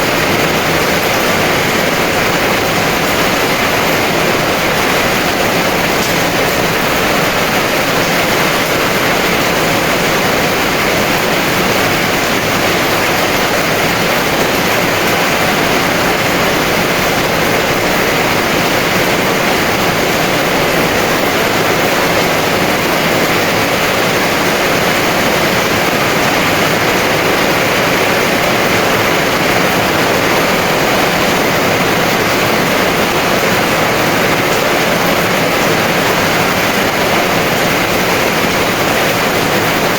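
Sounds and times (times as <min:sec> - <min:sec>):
heavy rain pouring: 0:00.0 - 0:39.9.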